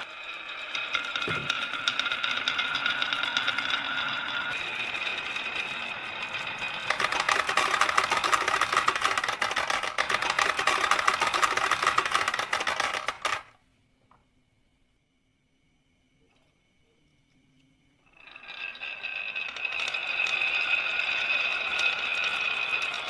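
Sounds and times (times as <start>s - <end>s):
marbles clattering down run: 0.0s - 13.5s, 18.2s - 23.0s
marbles rolling on marble run: 0.0s - 13.6s, 18.1s - 23.0s.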